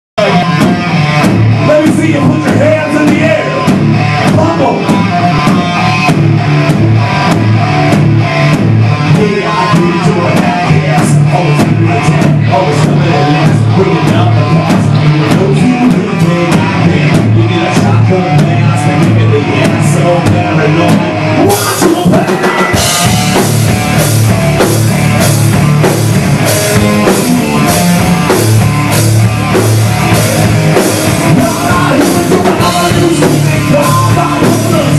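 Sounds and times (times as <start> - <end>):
drum kit beat: 0.2 - 34.9
rock band playing: 0.2 - 34.9.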